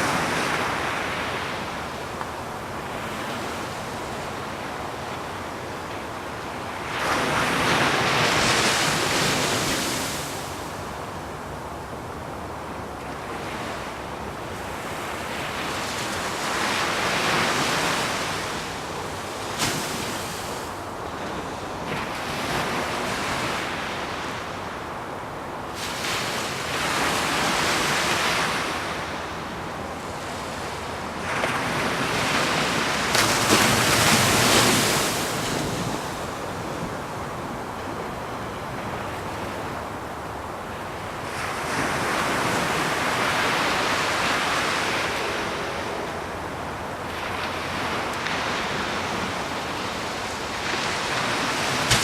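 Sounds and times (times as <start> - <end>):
waves breaking: 25.7 - 52.0.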